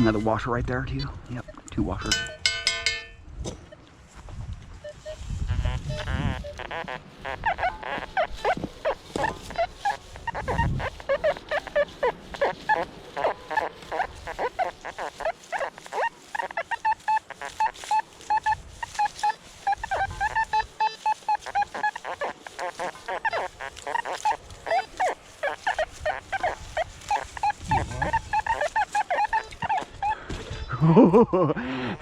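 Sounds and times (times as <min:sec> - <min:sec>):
metal detector short beeps: 0:01.0 - 0:03.8, 0:04.8 - 0:07.0, 0:16.9 - 0:22.1.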